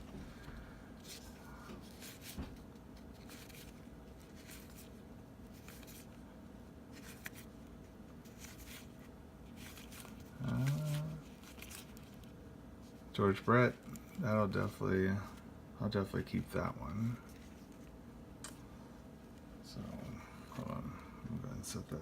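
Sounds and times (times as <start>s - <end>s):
cards sliding and tapping: 0.4s - 4.9s, 6.9s - 7.5s
person murmuring: 10.3s - 11.3s.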